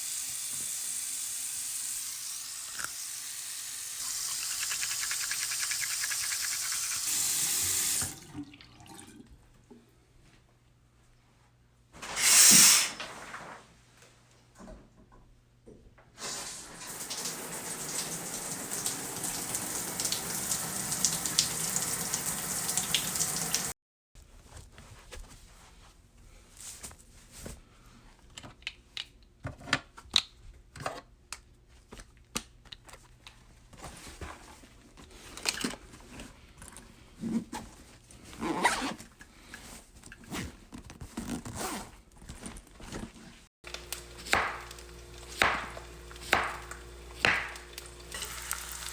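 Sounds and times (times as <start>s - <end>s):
water running: 0.0s - 9.3s, 16.2s - 23.8s, 43.7s - 48.9s.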